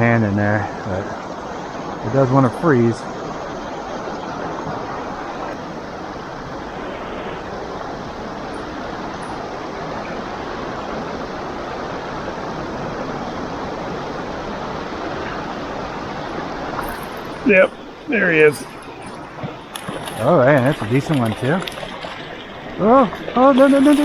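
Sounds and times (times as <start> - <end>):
creek water rushing: 0.0 - 24.0.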